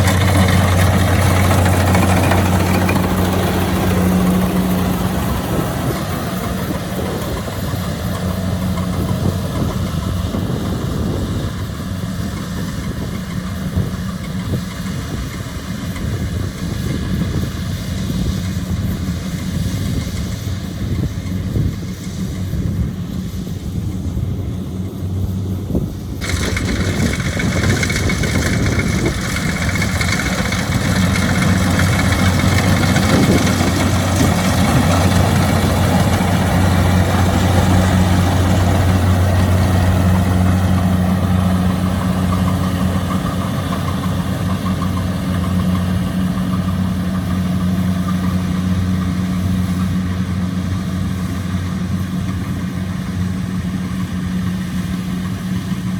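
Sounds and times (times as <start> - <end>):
loud rushing noise: 0.0 - 12.2, 26.1 - 44.8
diesel engine running: 0.0 - 55.9.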